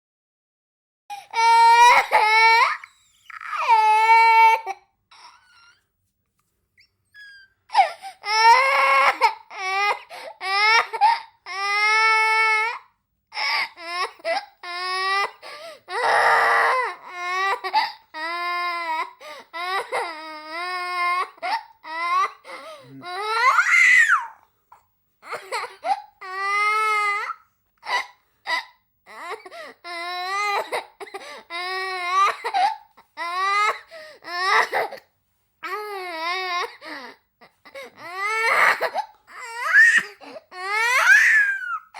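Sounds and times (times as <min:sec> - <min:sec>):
young child crying: 0:38.0 - 0:41.9.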